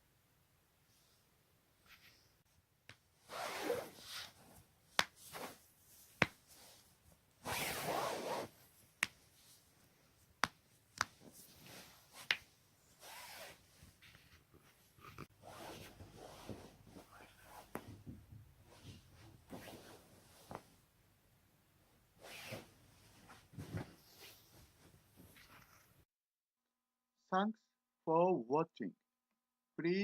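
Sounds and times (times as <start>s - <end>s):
rustling from body movement: 3.2s - 10.2s, 11.2s - 12.3s, 12.9s - 18.0s, 18.6s - 20.8s, 22.2s - 26.1s.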